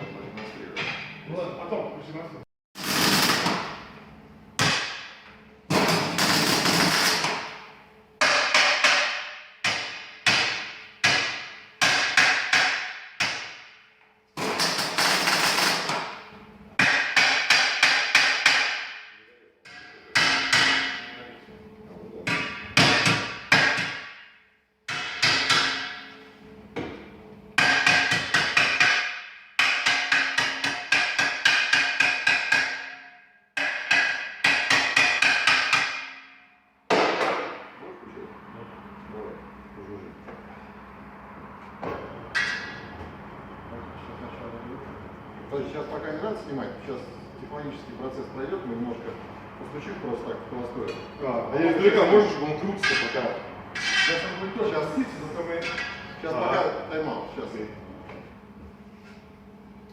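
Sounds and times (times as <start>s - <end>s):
hammer striking metal: 4.6s - 13.8s, 16.8s - 21.2s, 22.2s - 26.2s, 27.6s - 37.7s, 42.3s - 42.9s.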